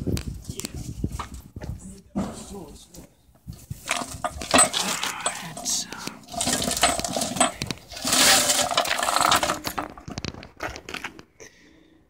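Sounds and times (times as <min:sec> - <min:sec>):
metal pieces clattering: 0:06.3 - 0:09.9.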